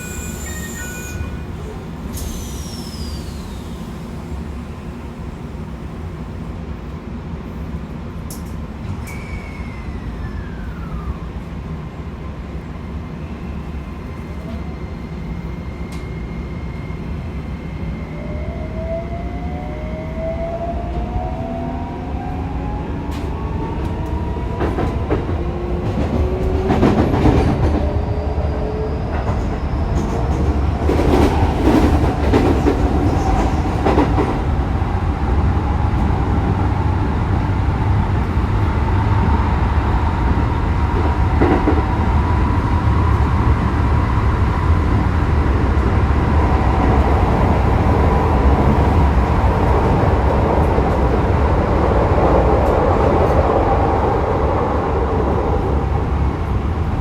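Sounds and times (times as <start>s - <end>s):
train running rumble: 22.7s - 57.0s.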